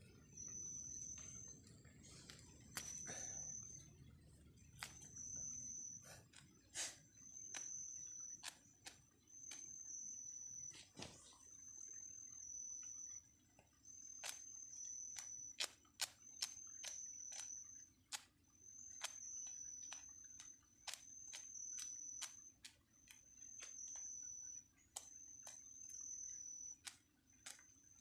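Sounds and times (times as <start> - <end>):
sharp clicks: 7.4 - 9.9, 14.1 - 18.3, 18.9 - 24.3, 24.9 - 28.0.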